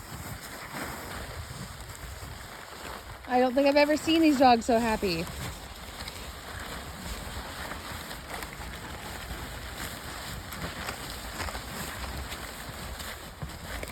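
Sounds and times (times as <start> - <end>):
faint rustles and scuffs: 0.0 - 13.9.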